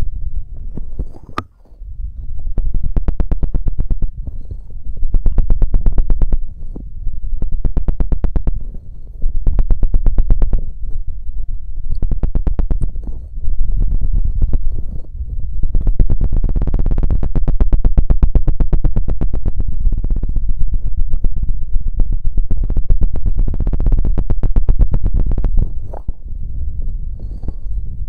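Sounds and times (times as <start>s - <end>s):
tool scratching on microphone: 0.0s - 28.0s.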